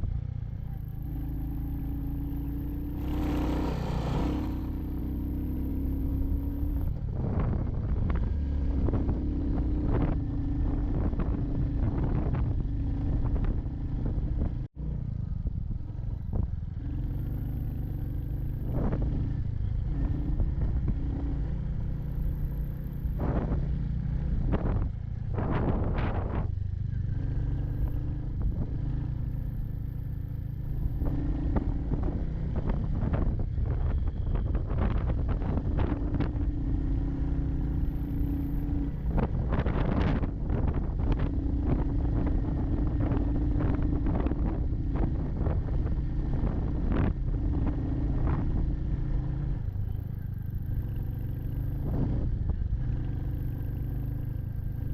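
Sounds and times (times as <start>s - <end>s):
motorcycle engine running: 0.0s - 54.9s
wind noise rushes: 2.9s - 14.7s, 18.5s - 26.6s, 30.7s - 50.0s, 51.7s - 53.0s.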